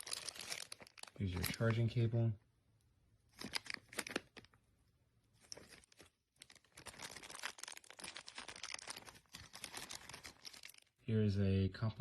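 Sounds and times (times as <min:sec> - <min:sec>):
plastic bag crinkling: 0:00.0 - 0:02.0, 0:05.4 - 0:10.9.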